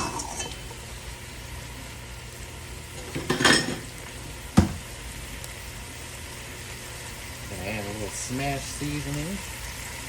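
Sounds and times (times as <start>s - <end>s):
metal utensil clattering in pot: 0.0s - 0.6s, 3.1s - 3.9s
knock against pot: 4.6s - 4.8s.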